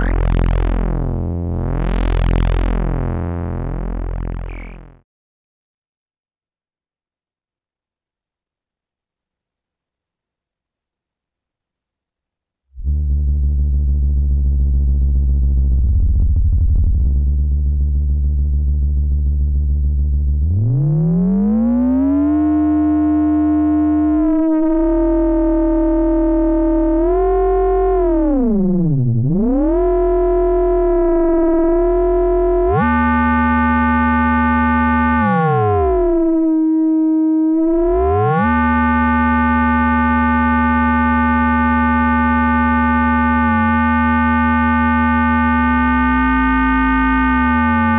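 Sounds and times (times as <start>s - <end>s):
resonant synthesizer tone: 12.8s - 47.9s.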